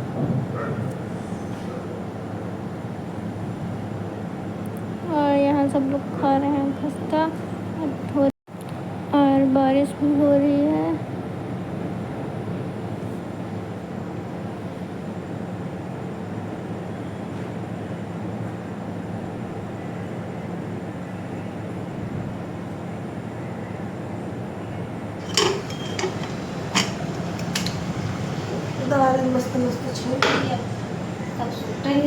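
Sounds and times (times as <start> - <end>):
dishes clinking: 25.2 - 32.0.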